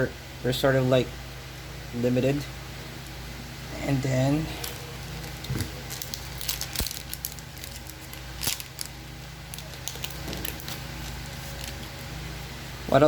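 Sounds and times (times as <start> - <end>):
cards rustling and tapping: 9.6 - 12.0.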